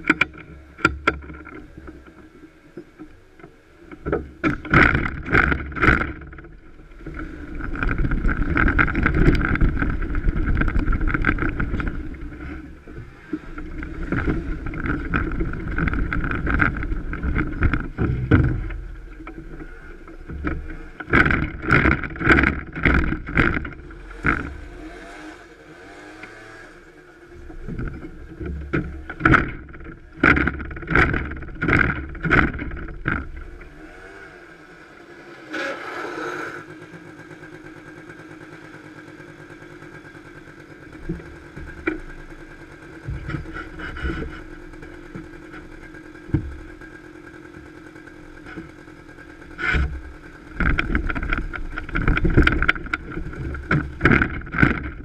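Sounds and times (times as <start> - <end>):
small engine running: 0.0 - 55.0.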